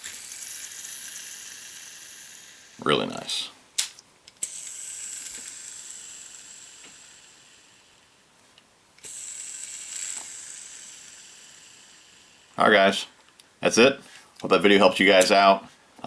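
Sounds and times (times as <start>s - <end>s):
fishing reel spinning whir: 0.0s - 2.8s, 4.4s - 8.1s, 9.0s - 12.6s.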